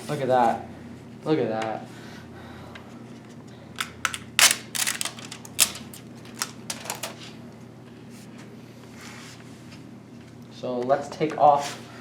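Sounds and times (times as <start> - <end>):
small hard clicks and knocks: 3.8 - 7.2.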